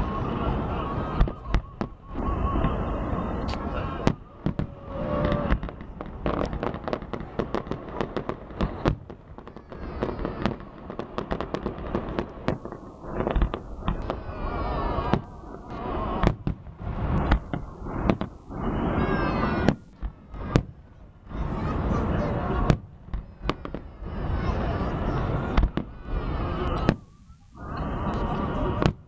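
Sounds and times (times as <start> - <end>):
fireworks bangs and crackles: 0.0 - 29.0.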